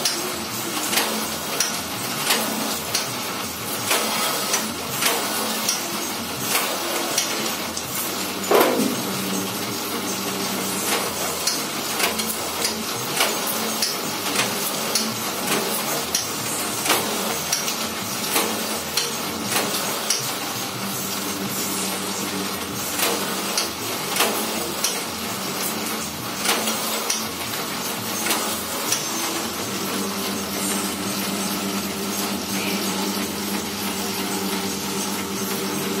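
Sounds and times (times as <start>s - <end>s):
machine motor hum: 8.0s - 11.1s, 28.6s - 36.0s.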